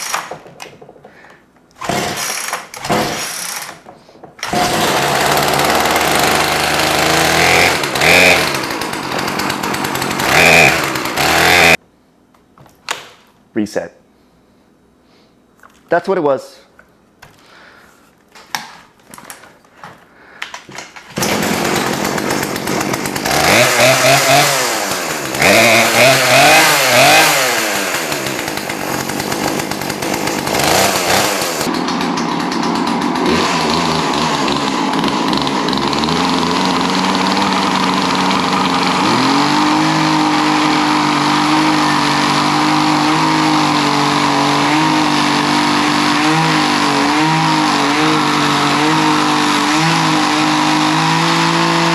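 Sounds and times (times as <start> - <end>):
chainsaw revving and idling: 0.0 - 0.4, 1.8 - 11.8, 21.2 - 51.9.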